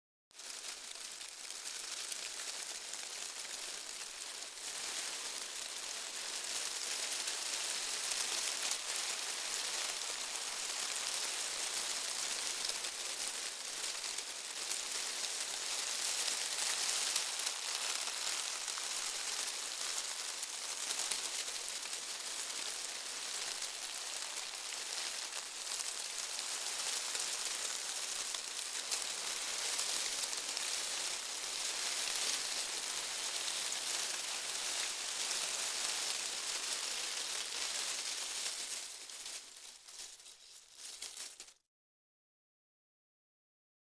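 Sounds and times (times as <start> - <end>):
dry leaves rustling: 0.3 - 41.6.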